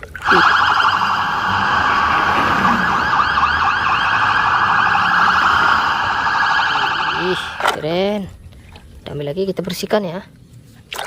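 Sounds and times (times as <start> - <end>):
police siren warbling: 0.2 - 7.8.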